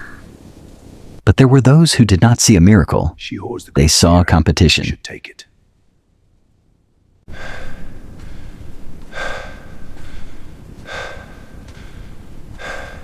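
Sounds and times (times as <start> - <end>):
low rumble: 6.2 - 13.0
heavy breathing: 7.3 - 13.0.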